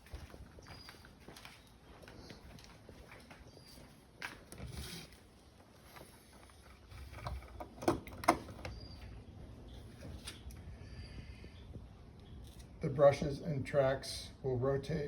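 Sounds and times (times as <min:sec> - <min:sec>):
handling clicks and knocks: 0:06.7 - 0:08.8.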